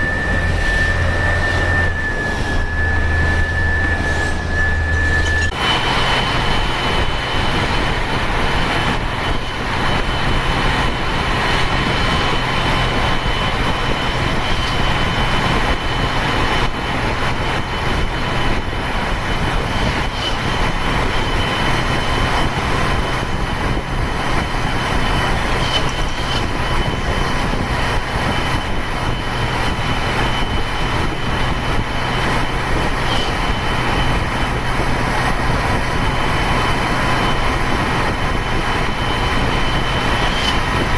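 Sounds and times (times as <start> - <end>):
turbo whistle: 0.0 - 5.6
diesel bus engine under load: 0.0 - 40.9.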